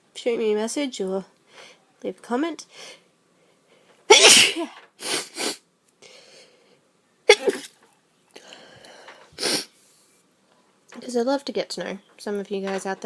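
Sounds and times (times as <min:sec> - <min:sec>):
woman sneezing: 0:04.1 - 0:05.6, 0:07.3 - 0:07.8.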